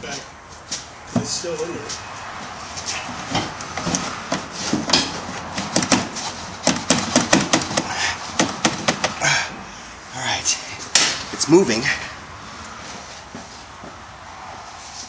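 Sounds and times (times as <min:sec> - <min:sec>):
metal knocks on exhaust pipe: 0:03.3 - 0:09.2.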